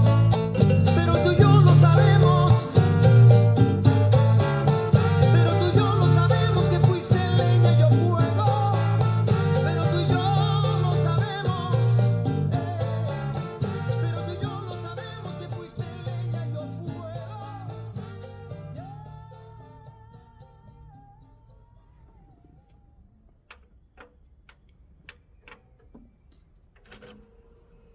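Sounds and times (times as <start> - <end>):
steady bass line: 0.0 - 20.2
latin song with singing: 0.0 - 22.9.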